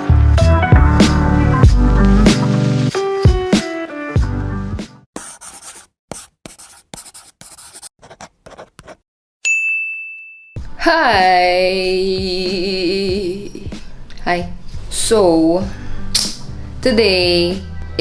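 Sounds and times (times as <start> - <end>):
pen scribbling on paper: 5.2 - 9.0
bright ding: 9.4 - 10.6.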